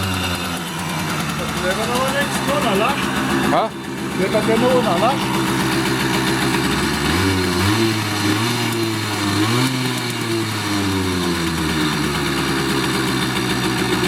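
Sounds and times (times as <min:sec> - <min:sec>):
two-stroke engine idling: 0:00.0 - 0:14.0.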